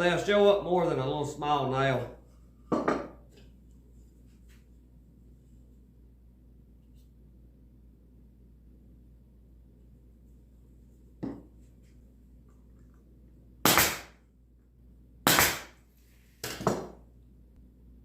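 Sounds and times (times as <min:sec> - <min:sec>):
stapler shots: 0:13.7 - 0:14.1, 0:15.3 - 0:15.8.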